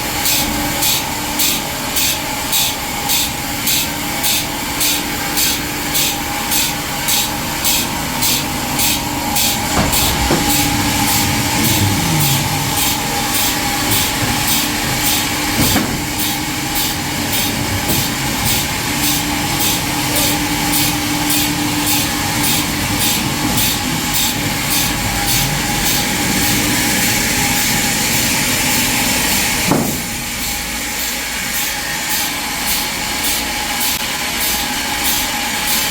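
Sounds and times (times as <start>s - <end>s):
sawmill saw cutting log: 0.1s - 35.9s
sharp knocks: 9.4s - 16.9s.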